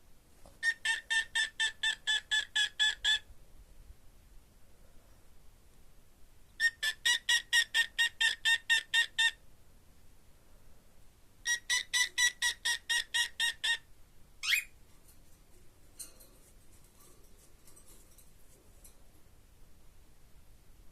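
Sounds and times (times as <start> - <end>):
cockatiel chirping: 0.6 - 3.2, 6.6 - 9.4, 11.5 - 14.8.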